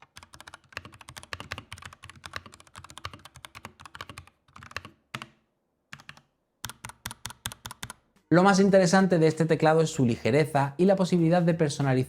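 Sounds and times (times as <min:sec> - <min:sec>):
mechanical keyboard typing: 0:00.0 - 0:08.0.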